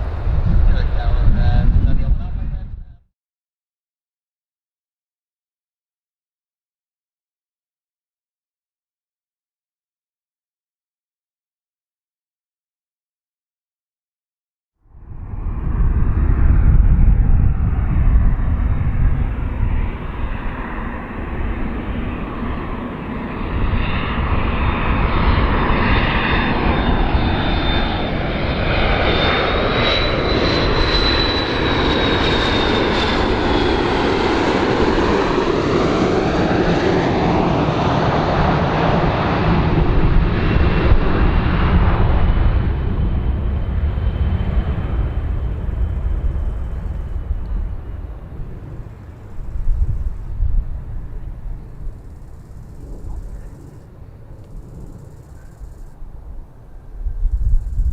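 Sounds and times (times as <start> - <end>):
airplane engines running: 0.0 - 3.0, 14.8 - 57.9
high engine whine: 14.9 - 57.9.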